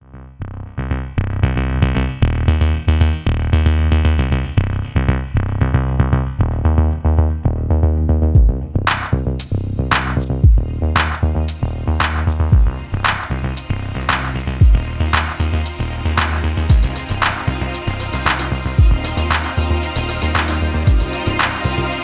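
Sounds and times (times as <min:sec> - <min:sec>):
drum machine beat: 0:08.4 - 0:22.0
synthesizer chords: 0:08.4 - 0:22.0.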